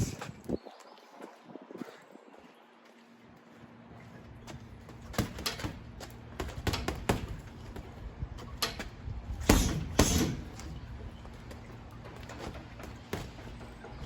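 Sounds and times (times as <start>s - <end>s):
gloves punching heavy bag: 5.1s - 5.8s, 6.4s - 7.8s, 9.4s - 10.6s.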